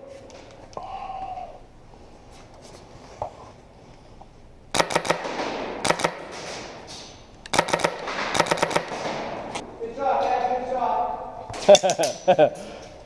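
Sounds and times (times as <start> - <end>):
airsoft guns firing: 4.7 - 6.9, 7.5 - 9.6.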